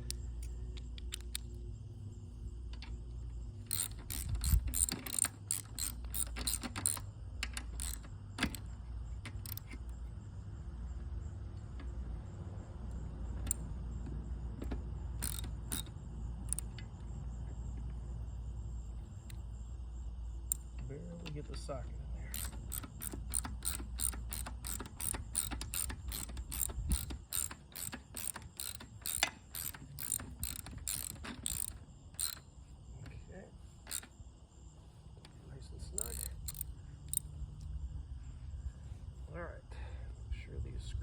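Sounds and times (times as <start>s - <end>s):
ratchet wrench clicking: 0.0s - 1.6s, 3.6s - 8.7s, 9.3s - 9.9s, 13.4s - 13.6s, 15.2s - 16.8s, 22.2s - 32.5s, 33.8s - 34.1s, 36.0s - 37.3s
steady low hum: 0.0s - 41.0s.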